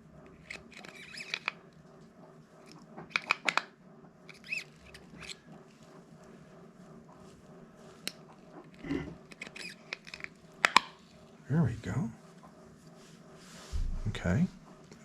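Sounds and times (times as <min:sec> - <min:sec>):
small reel parts clicking: 0:00.2 - 0:01.8, 0:02.6 - 0:05.6, 0:08.0 - 0:11.2.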